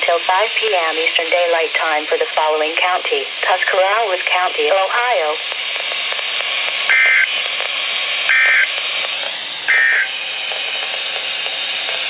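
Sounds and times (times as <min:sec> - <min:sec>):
radio hiss: 0:00.0 - 0:12.0
two-tone data warble bursts: 0:06.9 - 0:07.3, 0:08.3 - 0:08.7, 0:09.7 - 0:10.1.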